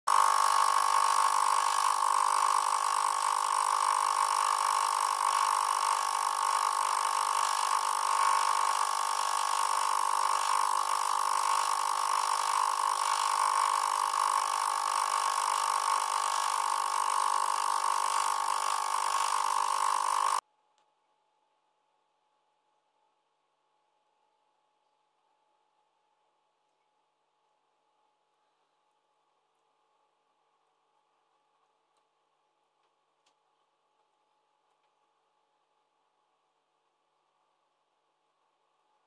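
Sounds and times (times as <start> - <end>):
aquarium filter whining: 0.1 - 20.4.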